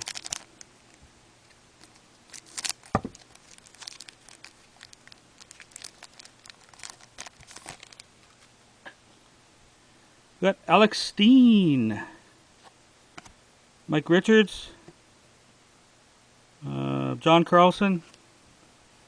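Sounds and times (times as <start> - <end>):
card packs being torn open: 0.0 - 1.0, 1.8 - 8.5.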